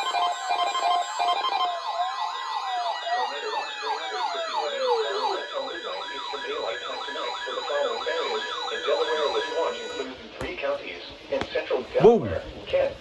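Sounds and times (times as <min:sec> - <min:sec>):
siren-like alarm yelps: 0:00.0 - 0:10.2
steady alarm tones: 0:00.0 - 0:10.4.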